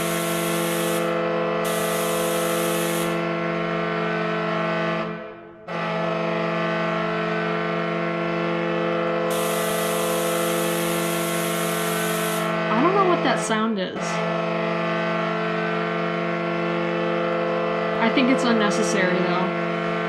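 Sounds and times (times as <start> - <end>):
hiss: 0.0 - 1.1, 1.7 - 3.2, 9.3 - 12.5
deep arena horn blast: 0.0 - 20.0.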